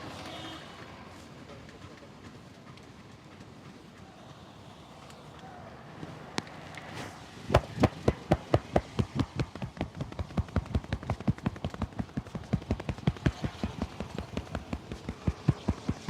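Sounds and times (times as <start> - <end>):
rhythmic massage slaps: 7.5 - 16.0.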